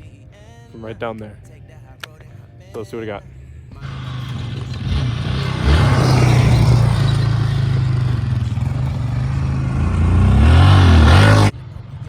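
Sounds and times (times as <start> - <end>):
off-road vehicle engine running hard: 3.3 - 12.0.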